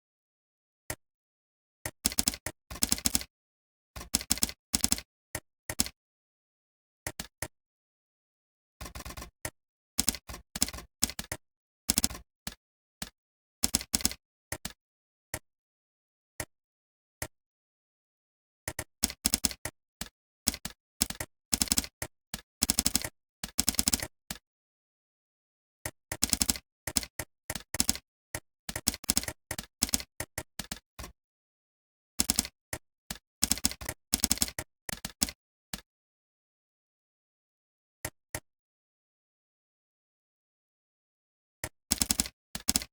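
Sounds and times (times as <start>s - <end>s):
computer keyboard typing: 20.5s - 24.1s, 26.2s - 28.0s, 28.7s - 30.8s, 32.2s - 32.5s, 33.4s - 35.4s, 41.6s - 42.9s.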